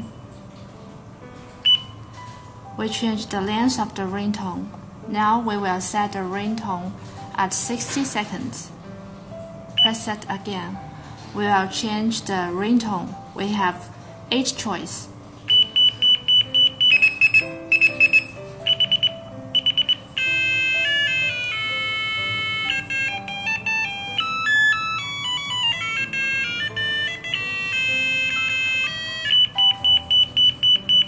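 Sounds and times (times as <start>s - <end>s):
electronic beeping melody: 1.6s - 2.0s, 9.8s - 10.1s, 15.5s - 31.0s
high electronic beeps: 15.5s - 22.9s.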